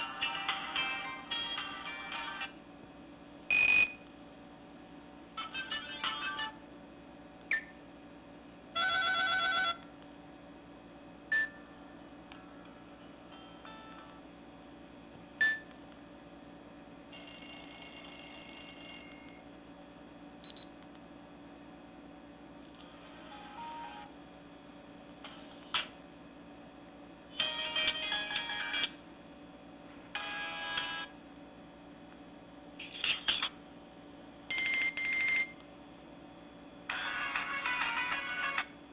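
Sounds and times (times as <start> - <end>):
trilling electronic ringtone beeps: 3.5 - 4.0, 8.8 - 9.8, 17.1 - 19.4, 34.5 - 35.5
phone ringtone melody: 8.8 - 9.8, 17.1 - 19.3, 36.9 - 38.7.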